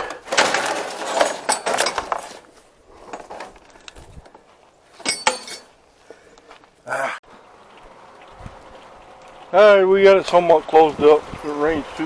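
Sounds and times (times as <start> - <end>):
metal clinks: 0.0 - 5.8
tarp rustling: 0.0 - 12.0.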